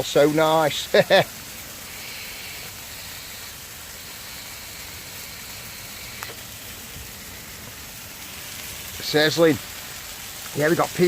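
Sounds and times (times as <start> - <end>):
meat sizzling in a pan: 0.0 - 11.0
faint click: 6.2 - 6.4.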